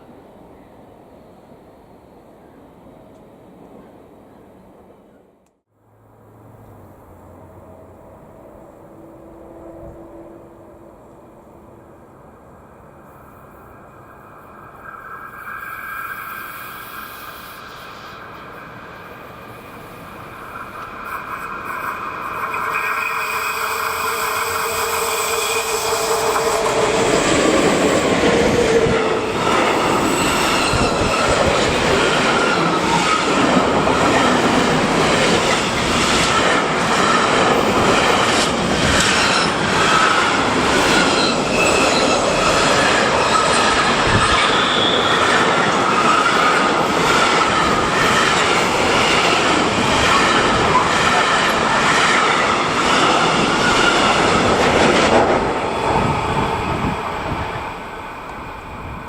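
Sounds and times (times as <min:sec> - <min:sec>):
electric freight train passing: 0:00.0 - 0:59.0
wheel squeal: 0:40.8 - 0:48.4.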